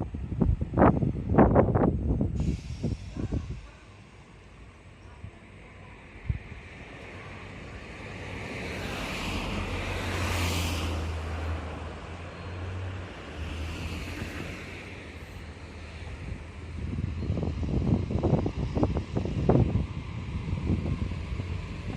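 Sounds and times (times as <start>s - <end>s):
vehicles passing close by: 4.8s - 21.9s.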